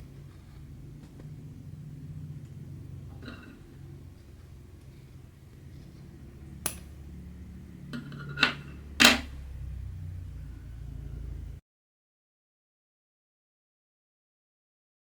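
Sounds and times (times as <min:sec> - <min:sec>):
low steady rumble: 0:00.0 - 0:11.6
sharp click: 0:06.6 - 0:06.9.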